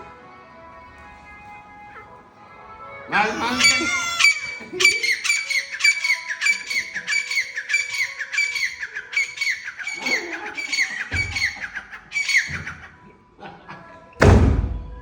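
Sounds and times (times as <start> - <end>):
partridge calling: 3.3 - 13.0.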